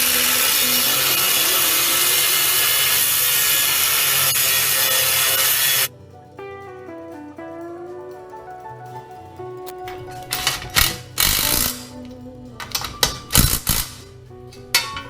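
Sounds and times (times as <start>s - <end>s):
power tool cutting: 0.0s - 5.9s, 10.8s - 12.0s, 13.3s - 14.0s
guitar background music: 0.0s - 15.0s.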